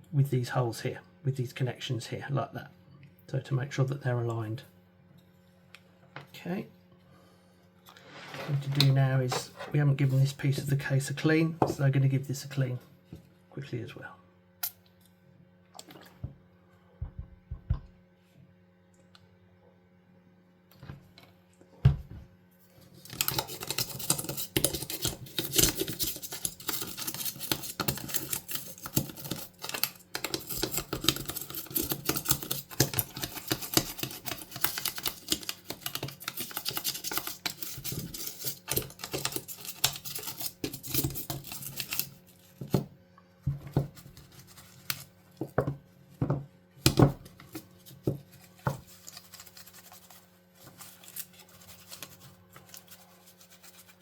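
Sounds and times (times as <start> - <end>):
toothbrush scrubbing plastic: 23.0 - 42.8, 43.8 - 45.2, 47.4 - 54.0.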